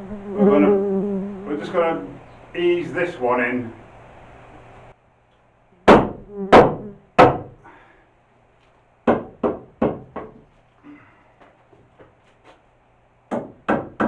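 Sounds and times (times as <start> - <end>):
hammer striking timber: 5.9 - 7.6, 9.1 - 10.4, 13.3 - 14.0.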